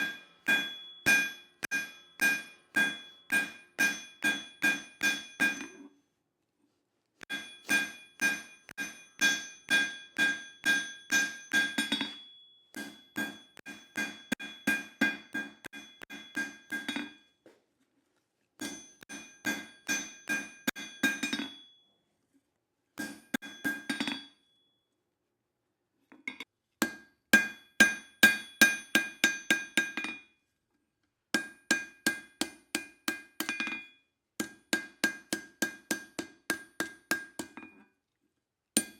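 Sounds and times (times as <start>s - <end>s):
hammer ringing on anvil: 0.0s - 5.9s, 7.3s - 17.3s, 18.6s - 21.8s, 23.0s - 24.5s, 26.8s - 30.2s, 31.4s - 37.6s.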